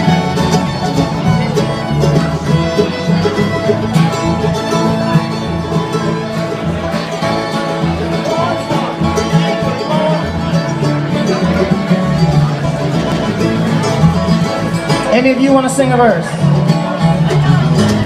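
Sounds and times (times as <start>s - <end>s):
banjo picking: 0.0s - 18.0s
bluegrass band playing: 0.0s - 18.0s
fiddle: 0.0s - 18.0s.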